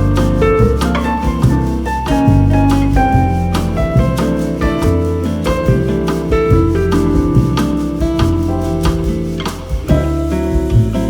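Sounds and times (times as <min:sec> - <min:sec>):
instrumental bossa nova: 0:00.0 - 0:11.0.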